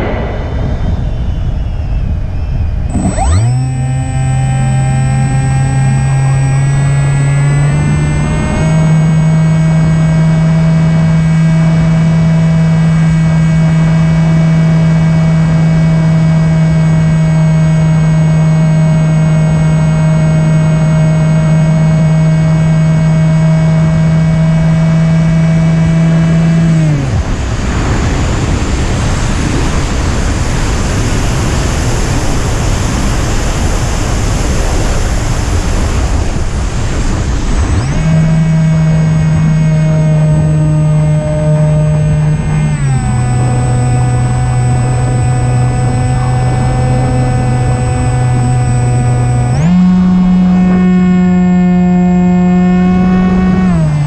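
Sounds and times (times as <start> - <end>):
wind rushing past: 0.0 - 3.4
electric motor and propeller hum: 2.8 - 54.0.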